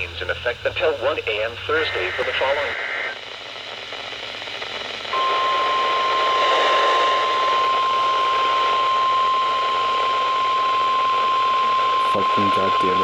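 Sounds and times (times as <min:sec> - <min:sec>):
radio static hiss: 0:00.0 - 0:13.0
steady alarm beep: 0:05.2 - 0:13.0.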